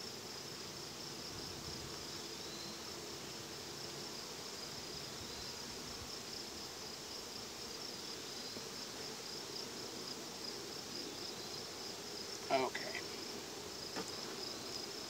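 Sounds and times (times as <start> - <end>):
honey bees buzzing: 0.0 - 15.0
high-pitched insect trill: 0.1 - 3.0.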